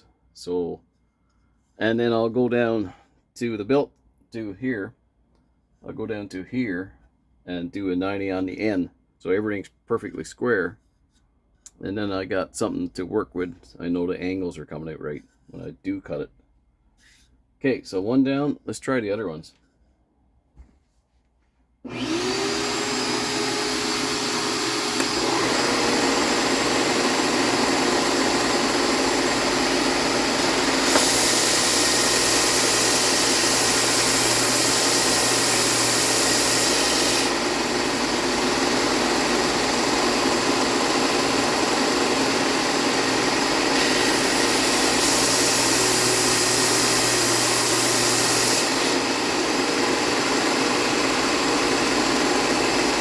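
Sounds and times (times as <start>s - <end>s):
belt sander motor running: 21.9s - 53.0s.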